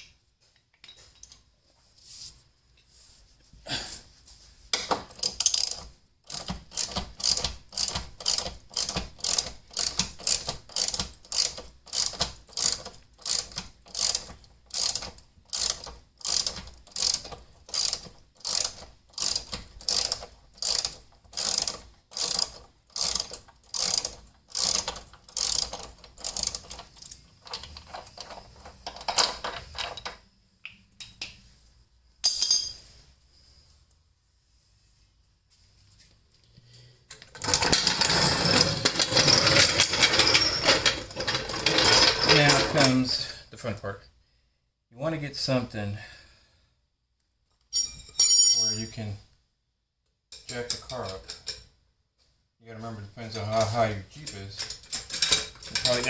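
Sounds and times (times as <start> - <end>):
ratchet wrench clicking: 5.2 - 27.2.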